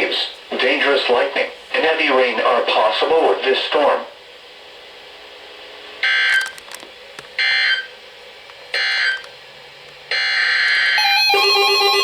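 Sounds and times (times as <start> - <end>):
steady radio hiss: 0.0 - 11.0.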